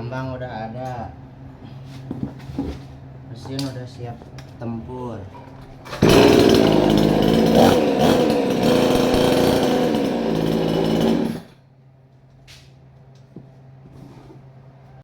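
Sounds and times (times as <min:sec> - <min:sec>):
chainsaw running at high revs: 0:05.9 - 0:11.6.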